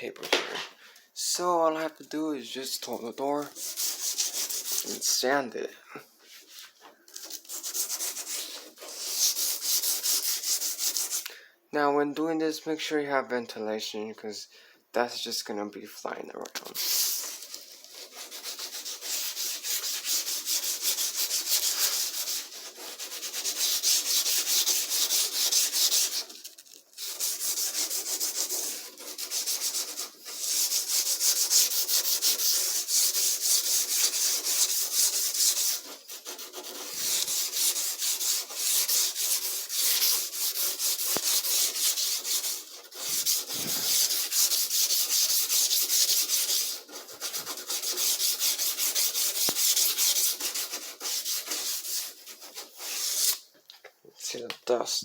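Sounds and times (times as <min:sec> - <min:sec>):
sandpaper sanding wood: 0:02.8 - 0:05.2, 0:07.3 - 0:11.2, 0:16.7 - 0:53.4.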